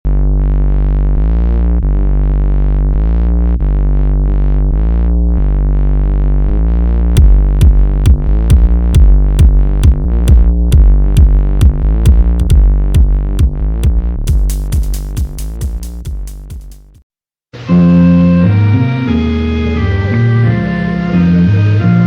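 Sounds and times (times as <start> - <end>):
synthesizer chords: 0.1 - 17.0, 17.6 - 22.0
kick drum beat: 7.2 - 17.0.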